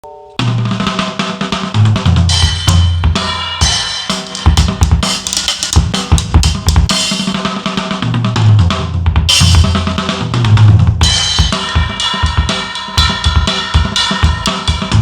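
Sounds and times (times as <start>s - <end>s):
snare and tom strokes: 0.4s - 8.7s
cymbal crashes: 2.3s - 5.3s, 11.0s - 15.0s
bass drum hits: 8.6s - 11.9s.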